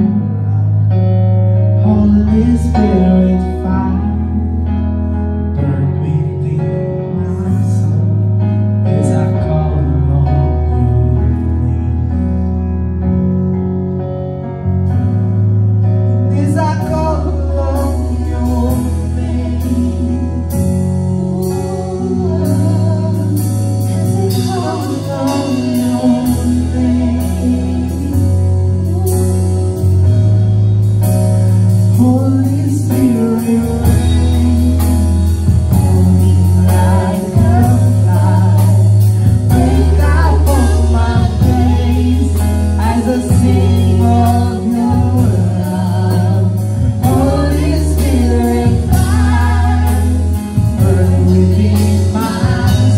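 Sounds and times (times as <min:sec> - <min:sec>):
band with sustained bass: 0:00.0 - 0:52.9
voices singing worship song: 0:01.8 - 0:08.4, 0:16.3 - 0:30.5, 0:31.7 - 0:52.9.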